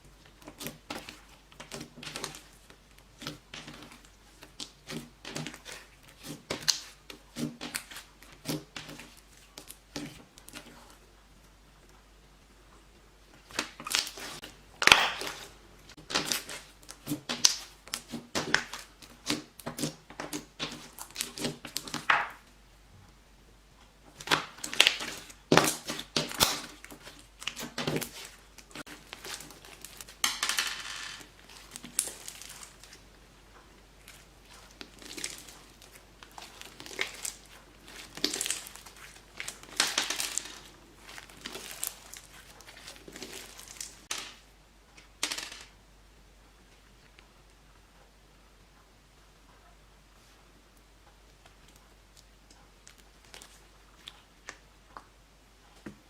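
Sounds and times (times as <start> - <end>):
slime squished by hand: 13.5 - 22.1, 34.0 - 44.1.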